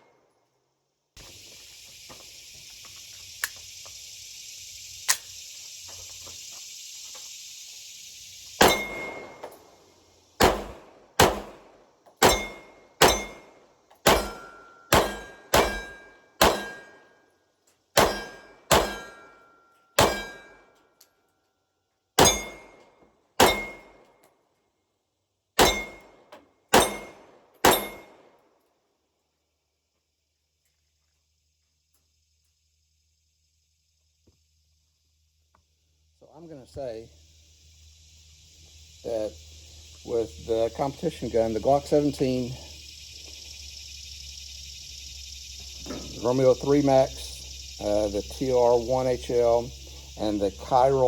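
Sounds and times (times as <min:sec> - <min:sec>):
steady hiss: 0:01.2 - 0:15.5, 0:32.1 - 0:51.0
metallic ring: 0:08.6 - 0:09.4, 0:12.2 - 0:17.2, 0:18.0 - 0:20.8, 0:22.2 - 0:24.0, 0:25.6 - 0:26.1, 0:26.7 - 0:28.2
pistol shots: 0:08.6 - 0:09.6, 0:10.4 - 0:17.0, 0:18.0 - 0:19.3, 0:20.0 - 0:20.5, 0:22.2 - 0:22.8, 0:23.4 - 0:24.0, 0:25.6 - 0:28.4.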